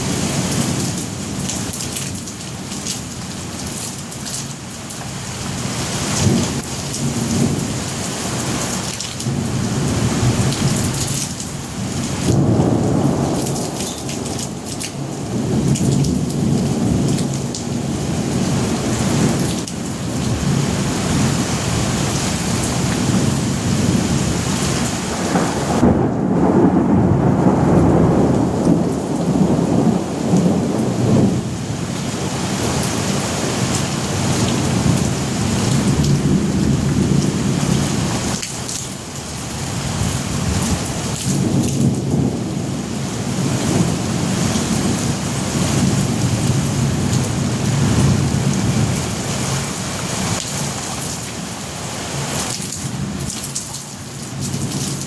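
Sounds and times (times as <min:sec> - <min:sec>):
heavy rain hissing: 0:05.2 - 0:53.2
thunder rumbling: 0:09.2 - 0:38.4, 0:39.4 - 0:50.4.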